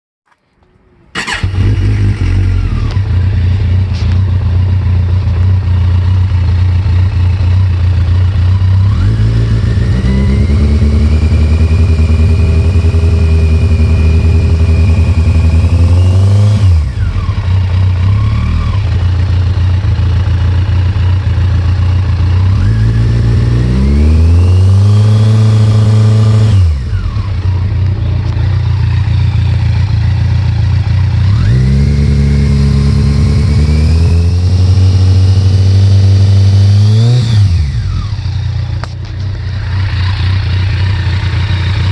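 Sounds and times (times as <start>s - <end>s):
motorcycle engine revving: 1.0s - 41.9s
engine knocking: 38.2s - 41.9s.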